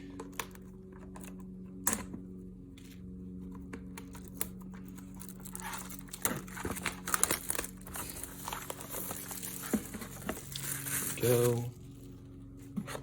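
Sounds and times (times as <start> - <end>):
packaging tearing and crinkling: 4.1 - 11.7.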